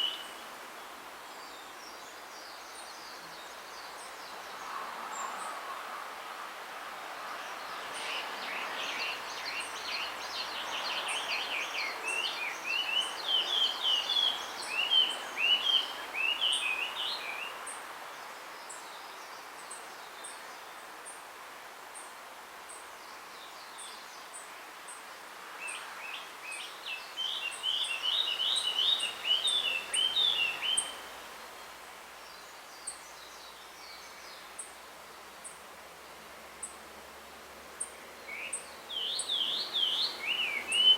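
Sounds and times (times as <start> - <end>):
background hiss: 0.0 - 40.9
bird warbling song: 25.7 - 31.0, 37.8 - 40.9.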